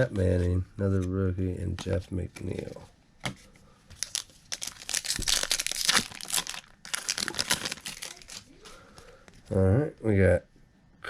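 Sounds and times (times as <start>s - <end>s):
wrapper tearing and crinkling: 4.0s - 8.7s.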